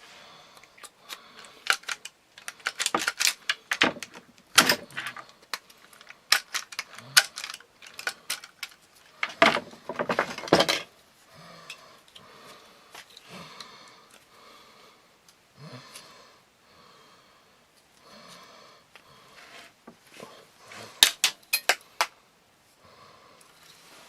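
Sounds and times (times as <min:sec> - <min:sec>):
rivet gun metallic clicks: 0:01.4 - 0:08.8.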